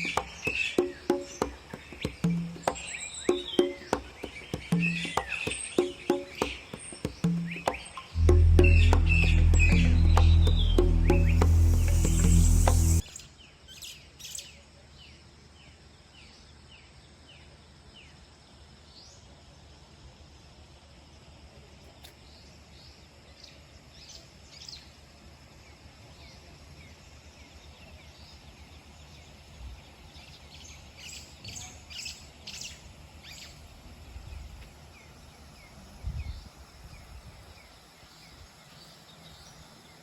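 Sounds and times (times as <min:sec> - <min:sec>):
faint low rumble: 0:08.2 - 0:13.0.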